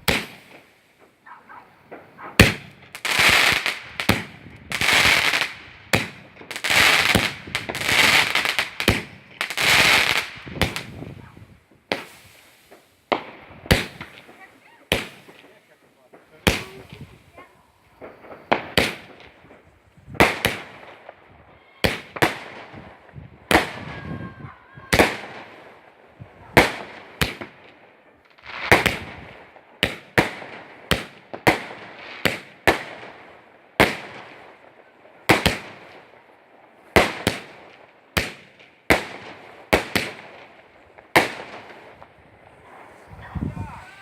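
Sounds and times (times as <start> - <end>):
fireworks bursting with loud bangs: 0.0 - 44.0.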